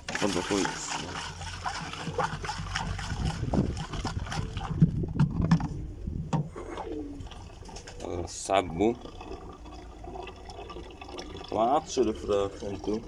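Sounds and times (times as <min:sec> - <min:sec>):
water sloshing: 0:00.0 - 0:13.0
pigeons cooing: 0:05.7 - 0:11.0.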